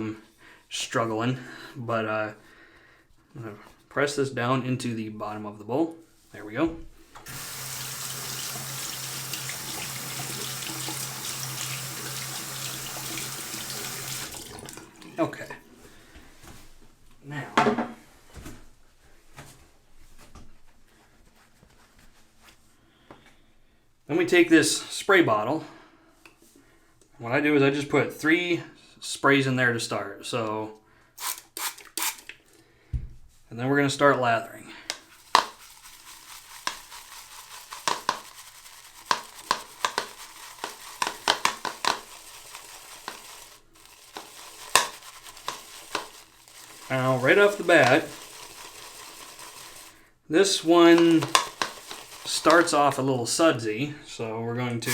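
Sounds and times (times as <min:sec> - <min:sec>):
shaving brush lathering soap: 0:07.3 - 0:15.2, 0:34.9 - 0:53.4.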